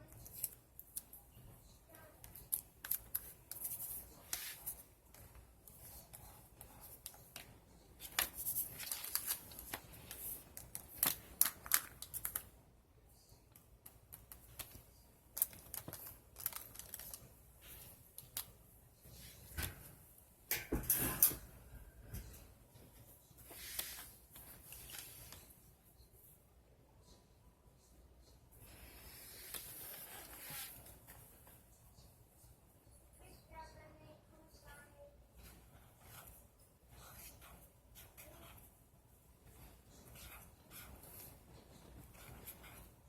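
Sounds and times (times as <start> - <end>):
paper rustling and crinkling: 6.7 - 12.5, 15.4 - 18.5, 23.4 - 25.5, 29.1 - 31.5.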